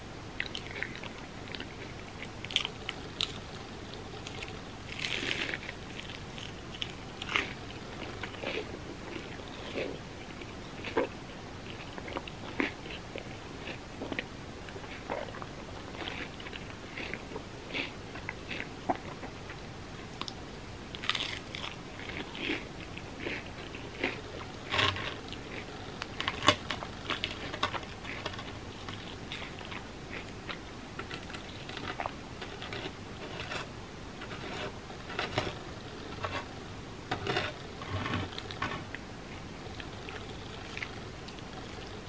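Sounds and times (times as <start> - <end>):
crunchy chewing close up: 0.4 - 42.0.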